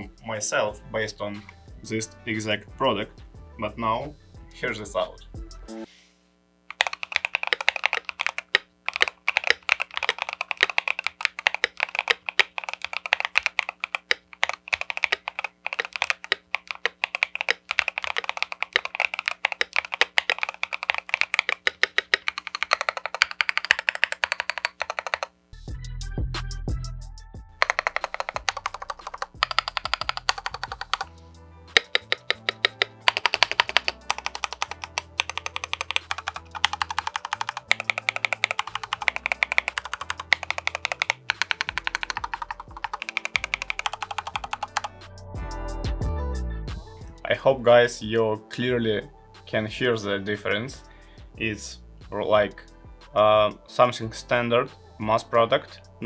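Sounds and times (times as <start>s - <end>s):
background music: 0.0s - 6.0s, 17.1s - 56.0s
mechanical keyboard typing: 6.7s - 25.4s, 27.6s - 31.1s, 31.7s - 44.9s.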